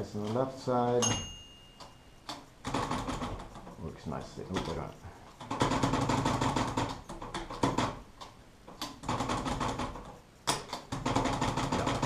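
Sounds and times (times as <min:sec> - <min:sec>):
typewriter clicking: 0:02.3 - 0:03.7, 0:04.5 - 0:12.0
typewriter clacks: 0:02.3 - 0:12.0.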